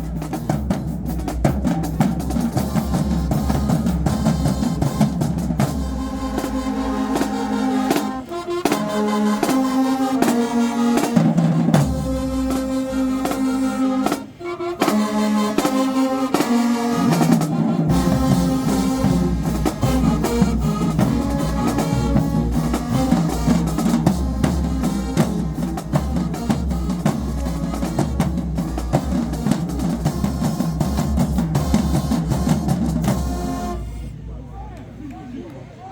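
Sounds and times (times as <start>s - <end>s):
marching band playing: 0.0s - 35.0s
drumline of snares: 0.0s - 35.9s
heavy low bass: 17.0s - 35.2s.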